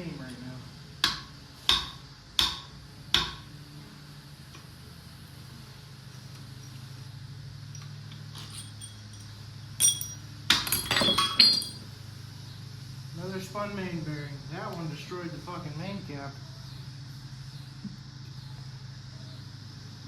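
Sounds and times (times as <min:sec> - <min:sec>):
metal taps and clinks: 0:07.7 - 0:11.8
low steady hum: 0:07.7 - 0:12.1.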